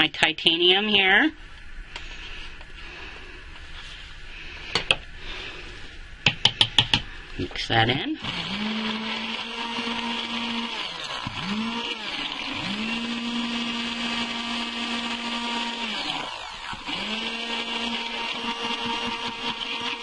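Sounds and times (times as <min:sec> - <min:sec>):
stick blender motor: 0:08.2 - 0:20.0.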